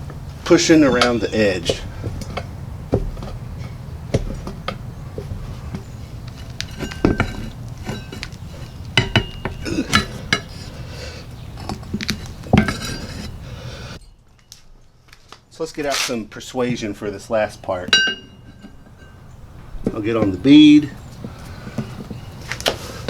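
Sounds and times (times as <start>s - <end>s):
pry bar clinking on wheel rim: 0.4s - 13.5s, 17.8s - 22.8s.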